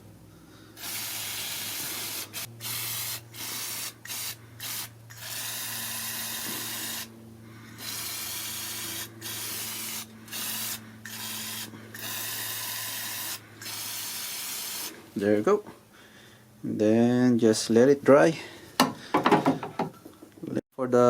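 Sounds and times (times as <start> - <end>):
aerosol can spraying: 0.8 - 7.1, 7.8 - 15.0.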